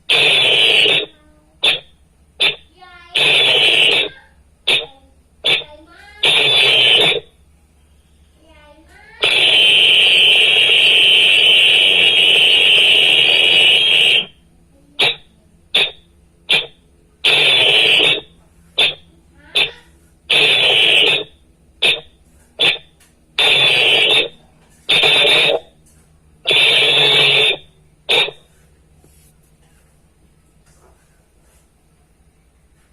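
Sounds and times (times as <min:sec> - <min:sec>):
whistle blasts and toots: 0:00.1 - 0:02.6, 0:03.2 - 0:07.3, 0:09.2 - 0:14.4, 0:15.0 - 0:25.7, 0:26.5 - 0:28.5.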